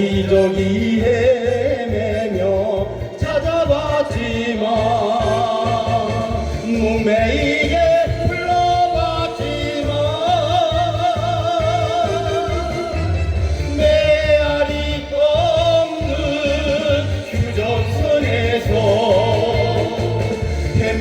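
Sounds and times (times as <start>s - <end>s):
backing track with steady beat: 0.0s - 21.0s
person singing with vibrato: 0.0s - 21.0s.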